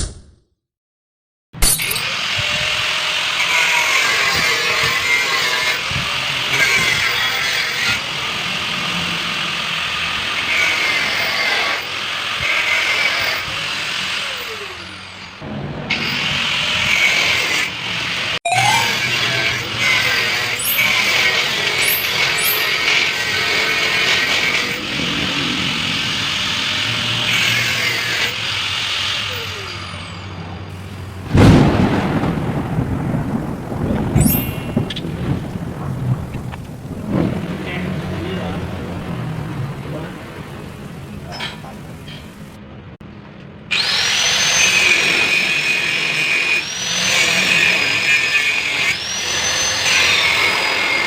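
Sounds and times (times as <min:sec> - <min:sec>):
steady hiss: 0:30.8 - 0:37.1
loud rumbling boom: 0:31.2 - 0:38.9
power tool whirring: 0:43.7 - 0:51.0.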